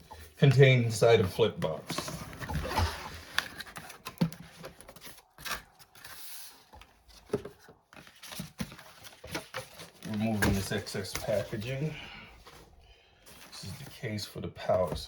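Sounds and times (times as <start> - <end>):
cardboard box being opened: 1.6 - 11.9.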